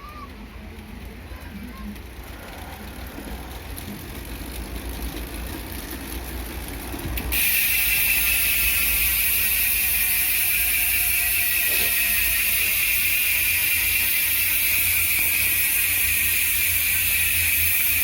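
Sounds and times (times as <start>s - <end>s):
bicycle freehub ratchet buzzing: 1.8s - 18.0s.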